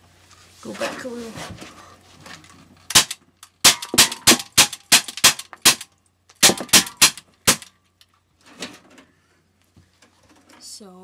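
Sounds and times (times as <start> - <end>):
bb pistol shots: 2.9 - 7.7.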